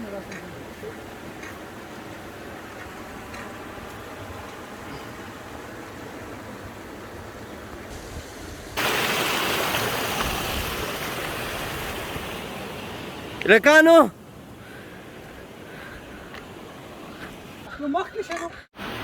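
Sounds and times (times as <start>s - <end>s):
waterfall rushing: 1.0s - 14.2s.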